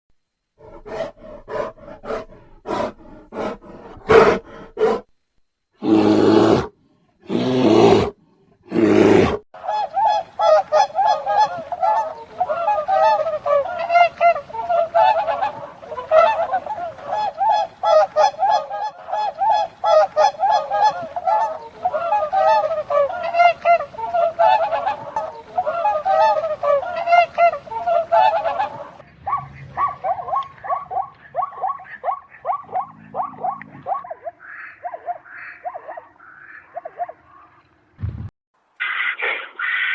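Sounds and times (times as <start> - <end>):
geese honking: 9.9 - 37.5.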